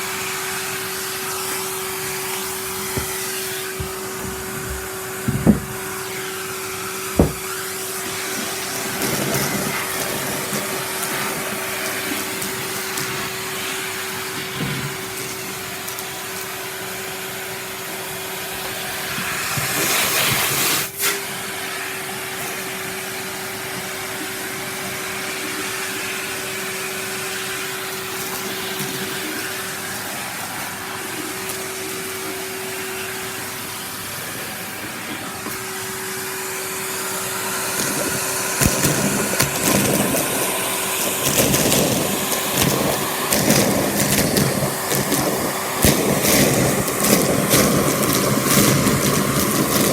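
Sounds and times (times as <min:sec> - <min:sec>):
vacuum cleaner running: 0:00.0 - 0:49.9.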